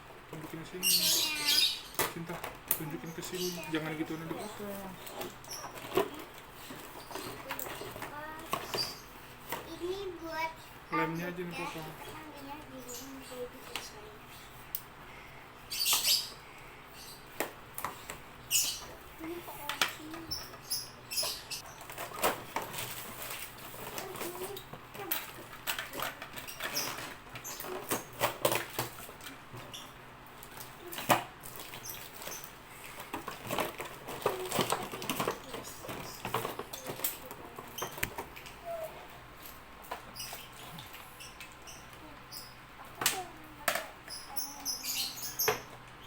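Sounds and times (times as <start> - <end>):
packaging rustling and crinkling: 21.6 - 29.3.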